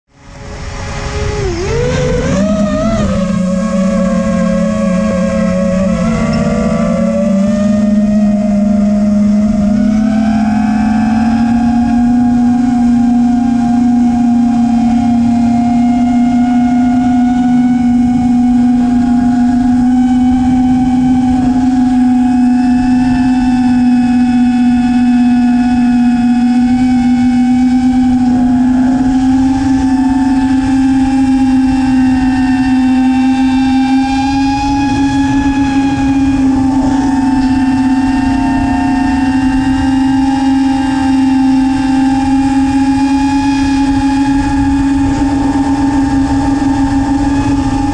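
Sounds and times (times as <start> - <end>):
wind buffeting microphone: 0.1 - 47.9
quadcopter motors whining: 0.2 - 47.9.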